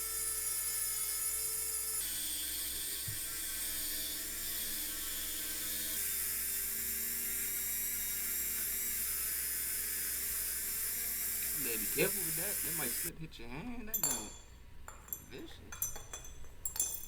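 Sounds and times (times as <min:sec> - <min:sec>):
power tool whirring: 0:00.0 - 0:13.1.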